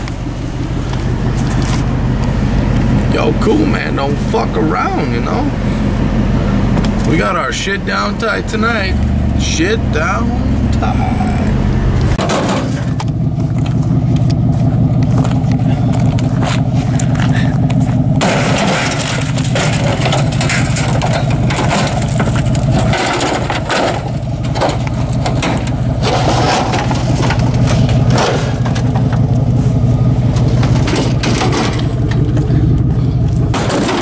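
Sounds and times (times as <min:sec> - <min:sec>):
pickup truck engine running: 0:00.0 - 0:34.0
clanks and rattles: 0:11.9 - 0:34.0.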